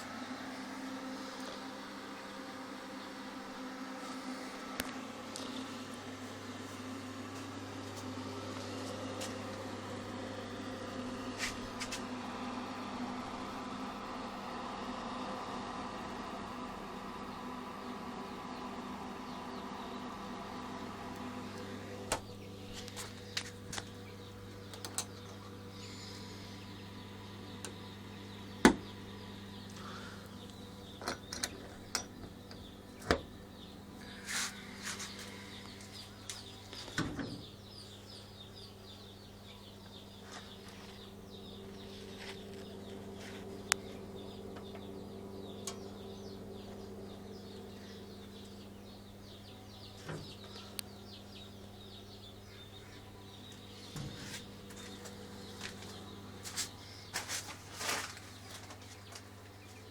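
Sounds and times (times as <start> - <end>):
low electrical hum: 0.0 - 59.9
birds chirping: 16.0 - 59.9.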